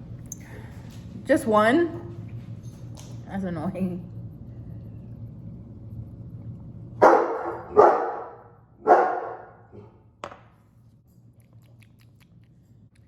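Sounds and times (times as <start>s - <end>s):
dog barking: 7.0s - 10.0s.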